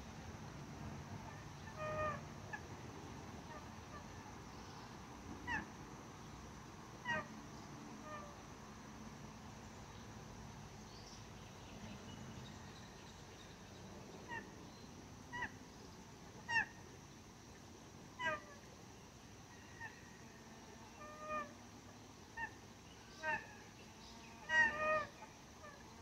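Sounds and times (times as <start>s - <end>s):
faint background noise: 0.0s - 26.0s
geese calling softly: 1.1s - 2.8s, 3.4s - 5.9s, 6.9s - 8.6s, 14.1s - 26.0s.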